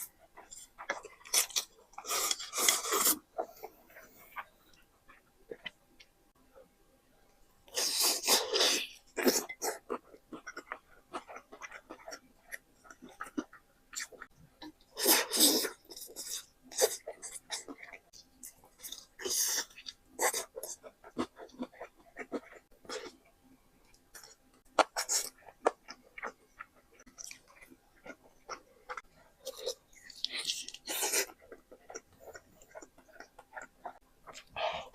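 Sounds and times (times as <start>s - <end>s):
wet chewing: 7.8s - 23.2s, 23.9s - 34.9s.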